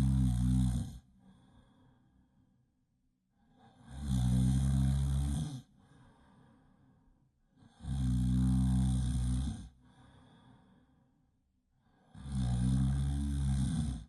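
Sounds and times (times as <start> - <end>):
loud snoring: 0.0 - 1.1, 3.6 - 5.7, 7.6 - 9.8, 12.0 - 14.0
quiet breaths: 0.0 - 14.0.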